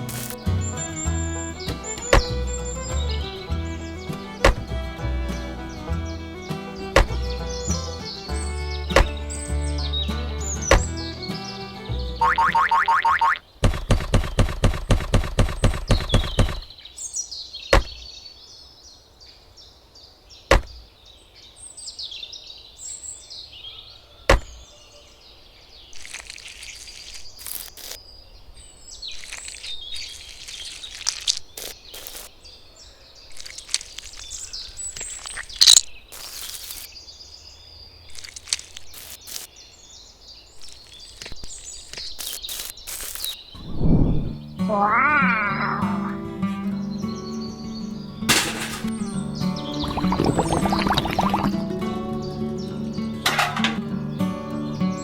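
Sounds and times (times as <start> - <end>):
small birds chirping: 0.0 - 55.0
sharp taps and knocks: 13.6 - 16.7.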